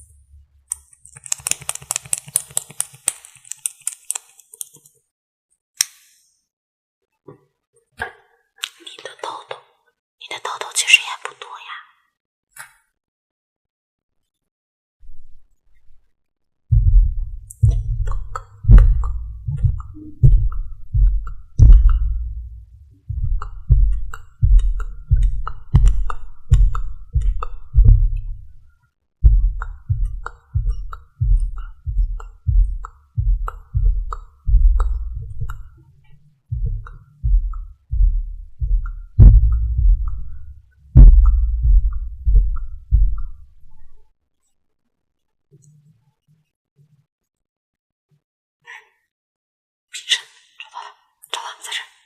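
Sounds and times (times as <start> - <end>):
muffled pats on microphone: 16.7 - 22.5, 23.1 - 28.5, 36.5 - 43.8.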